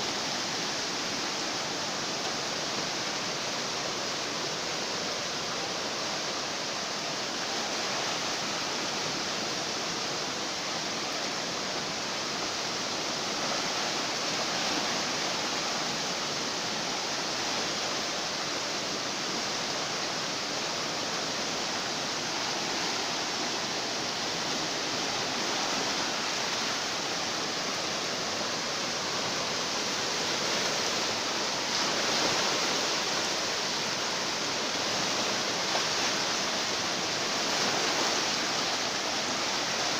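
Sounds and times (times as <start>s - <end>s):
floodwater rushing: 0.0s - 39.9s.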